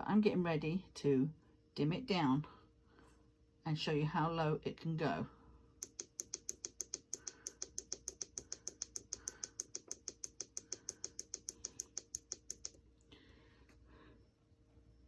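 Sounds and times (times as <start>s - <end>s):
dimmer switch clicking rapidly: 5.8s - 12.8s.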